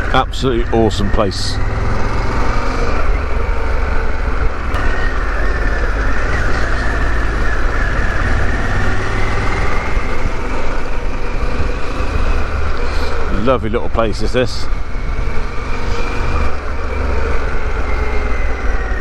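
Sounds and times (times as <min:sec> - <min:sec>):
motorcycle engine running: 0:00.0 - 0:19.0
constant low rumble: 0:02.2 - 0:09.1, 0:09.8 - 0:17.9.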